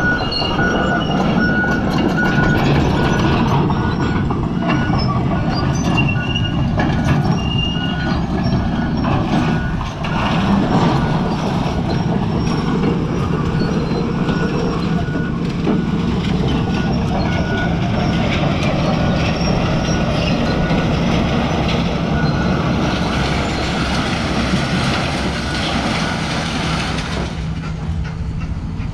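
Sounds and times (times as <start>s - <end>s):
excavator diesel engine running: 0.0s - 28.9s
knocks and clatter: 0.0s - 28.9s.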